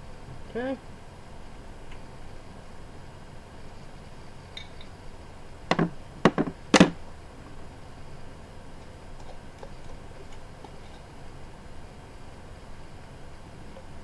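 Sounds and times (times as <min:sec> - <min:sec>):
objects knocking on hard counter: 0:05.7 - 0:07.0.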